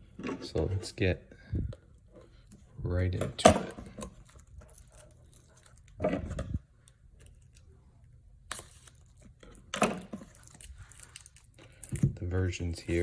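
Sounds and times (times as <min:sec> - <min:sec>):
plastic wrap and cardboard rustling: 0:08.6 - 0:13.0.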